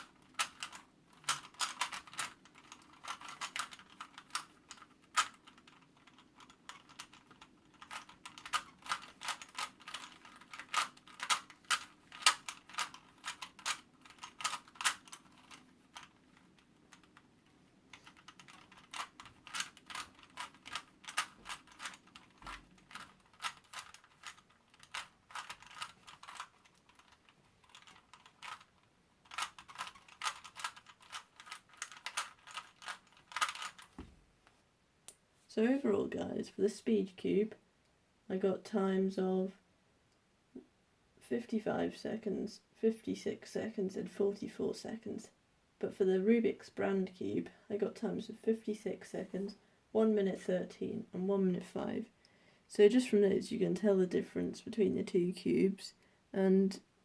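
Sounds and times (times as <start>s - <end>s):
puzzle cube plastic clicks: 0.0s - 17.3s, 17.9s - 33.9s.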